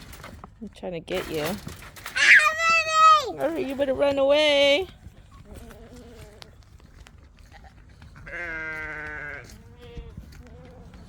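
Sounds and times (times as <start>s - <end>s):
farm animal bleating: 5.4s - 6.6s, 7.5s - 11.0s.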